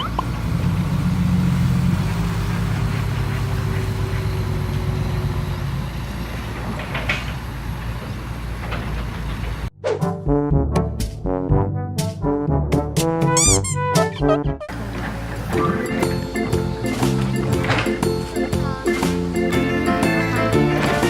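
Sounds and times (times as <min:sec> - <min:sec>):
diesel engine rumbling: 0:00.0 - 0:09.7, 0:13.4 - 0:21.0
brass band music: 0:10.0 - 0:14.8, 0:15.5 - 0:21.0.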